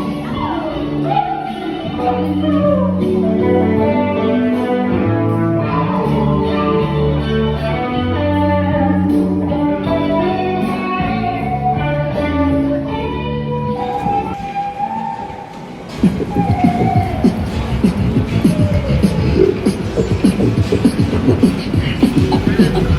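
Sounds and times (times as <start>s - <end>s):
moving bass line: 16.0s - 22.9s.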